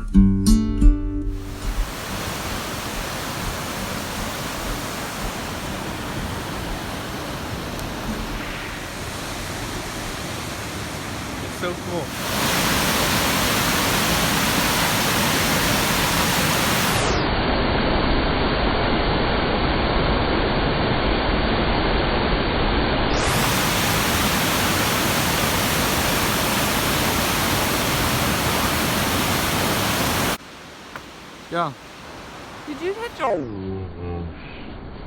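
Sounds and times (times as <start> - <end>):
waterfall rushing: 1.4 - 17.2, 23.2 - 33.4.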